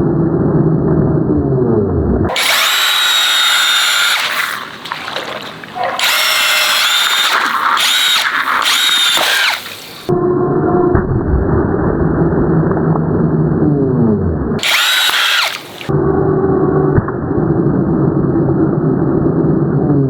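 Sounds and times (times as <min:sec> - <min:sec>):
high-pitched motor whine: 0:02.3 - 0:10.1, 0:14.6 - 0:15.9.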